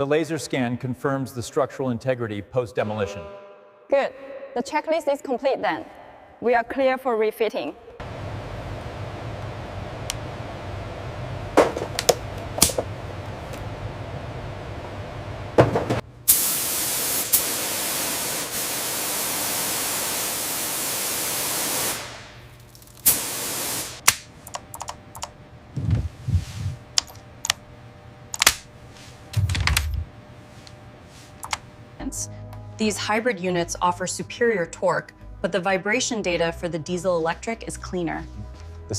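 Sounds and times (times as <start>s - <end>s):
low steady hum: 4.0s - 16.3s, 24.1s - 38.8s
loud hiss: 16.3s - 22.4s, 23.0s - 24.0s.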